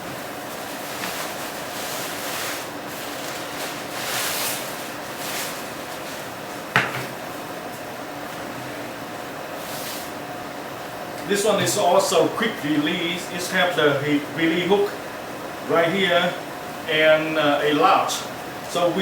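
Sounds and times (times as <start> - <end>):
fabric rustling: 0.4 - 6.7.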